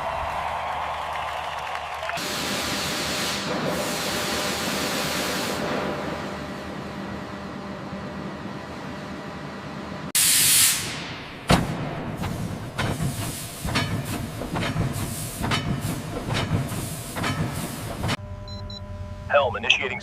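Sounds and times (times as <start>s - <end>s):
steam hissing: 2.2s - 5.8s, 10.2s - 18.2s
low mechanical hum: 5.6s - 10.1s, 11.0s - 20.0s.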